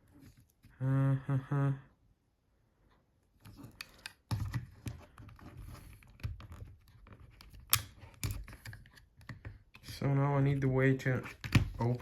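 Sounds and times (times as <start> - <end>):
plastic clicks and scrapes: 3.4 - 10.0.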